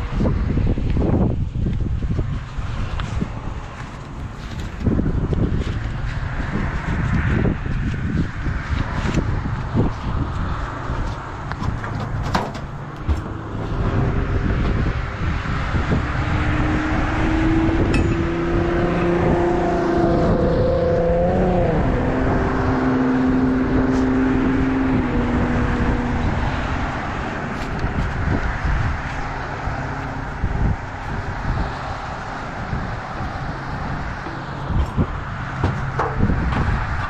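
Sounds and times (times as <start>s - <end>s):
pitched hum: 9.8s - 23.9s
heavy machine engine running: 11.3s - 15.7s.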